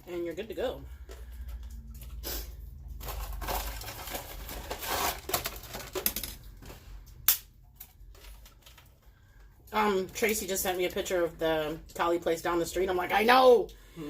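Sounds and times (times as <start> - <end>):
crinkling handling noise: 0.9 - 9.7.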